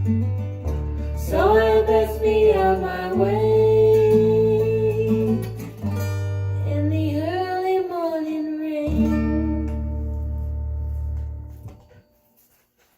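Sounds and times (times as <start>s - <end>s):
strummed acoustic guitar: 0.0s - 12.7s
person singing: 1.2s - 5.7s, 6.7s - 10.0s.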